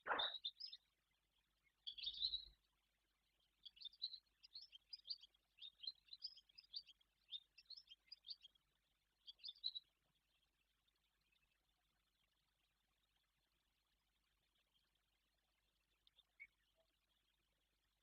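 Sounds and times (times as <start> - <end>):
swallow chirping: 0.0 - 0.8.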